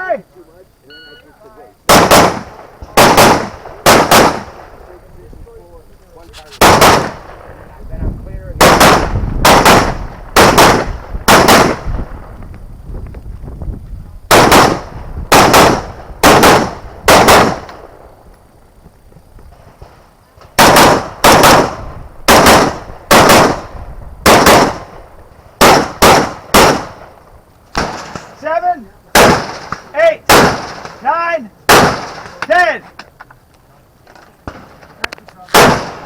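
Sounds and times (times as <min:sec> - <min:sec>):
rifle shots: 0:01.9 - 0:04.8, 0:06.4 - 0:07.5, 0:08.6 - 0:12.2, 0:14.3 - 0:18.0, 0:19.7 - 0:28.4, 0:29.1 - 0:32.7, 0:34.4 - 0:36.0.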